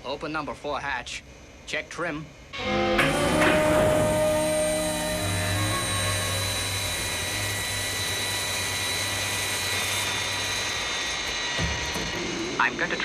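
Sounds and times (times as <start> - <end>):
high engine whine: 2.4 - 13.0
jet engines rushing: 2.6 - 13.0.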